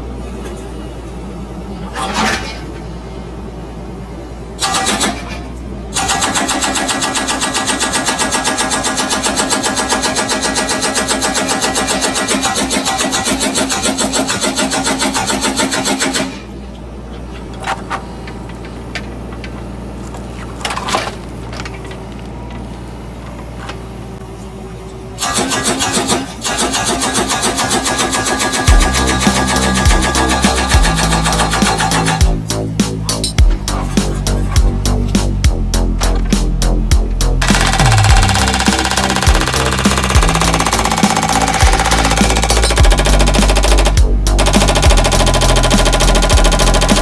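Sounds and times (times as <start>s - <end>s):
excavator engine running: 0.0s - 47.0s
hydraulic breaker hammering concrete: 6.0s - 16.5s, 25.2s - 32.5s, 33.4s - 47.0s.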